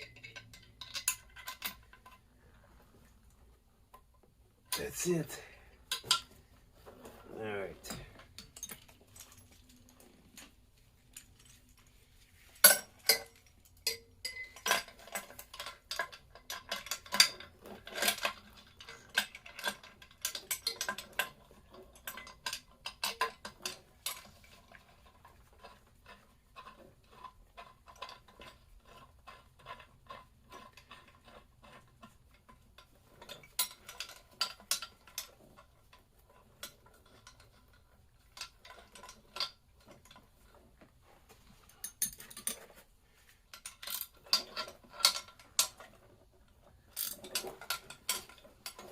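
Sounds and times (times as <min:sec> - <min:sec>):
metal tools and parts clattering: 0:00.0 - 0:02.2, 0:04.7 - 0:11.9, 0:12.6 - 0:25.8, 0:32.8 - 0:40.6, 0:41.4 - 0:42.8, 0:43.5 - 0:48.9.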